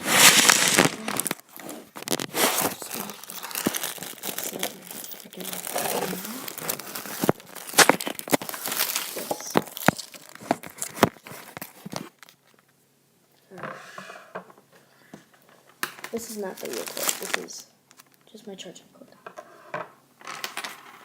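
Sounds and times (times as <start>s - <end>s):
crinkling handling noise: 0.0s - 12.8s, 15.2s - 18.3s.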